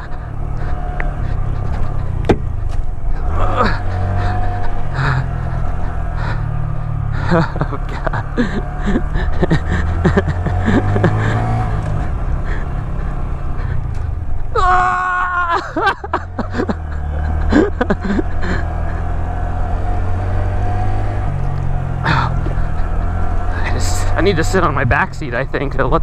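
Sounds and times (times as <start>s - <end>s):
bike rattling over bumps: 0.0s - 26.0s
motorcycle engine running: 0.0s - 26.0s.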